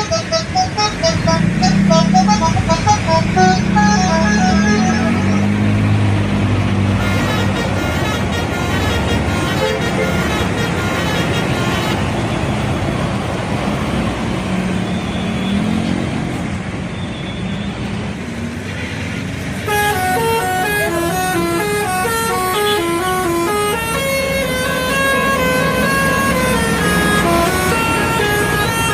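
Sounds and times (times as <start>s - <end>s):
musical bus horn melody: 0.0s - 12.4s, 19.6s - 28.9s
bus engine: 0.0s - 28.9s
road noise: 0.0s - 28.9s.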